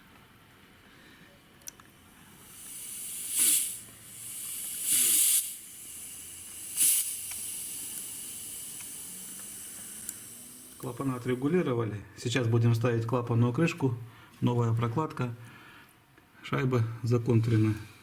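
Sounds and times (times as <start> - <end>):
compressed air hissing: 2.0 - 11.8
compressed air blasts: 2.3 - 11.6.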